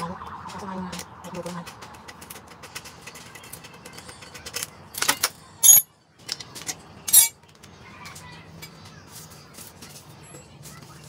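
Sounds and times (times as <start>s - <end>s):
metallic clinks of tools: 5.1s - 5.9s, 7.1s - 7.4s.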